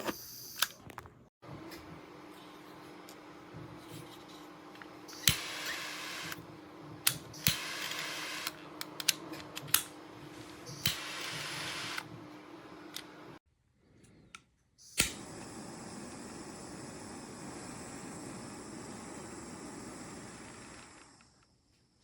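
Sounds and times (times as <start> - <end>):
hissing gas flame: 14.8 - 21.6
torch igniter snapping: 15.0 - 21.4.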